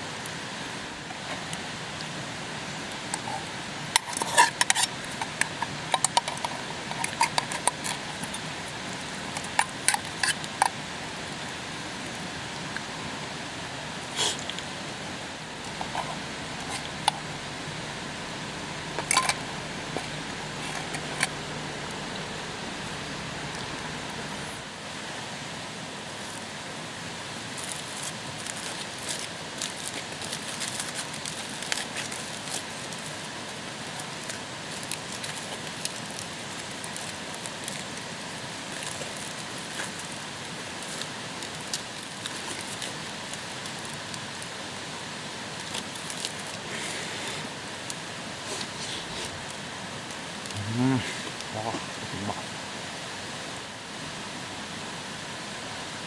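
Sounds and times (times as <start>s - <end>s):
campfire crackling: 0.0s - 56.0s.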